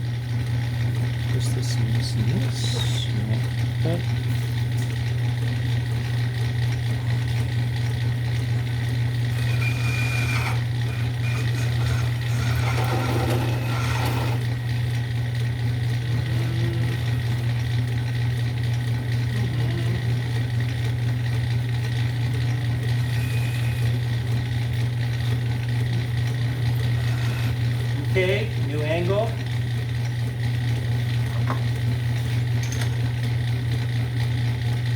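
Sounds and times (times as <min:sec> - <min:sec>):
lathe motor humming: 0:00.0 - 0:34.9
lathe cutting noise: 0:07.6 - 0:30.0.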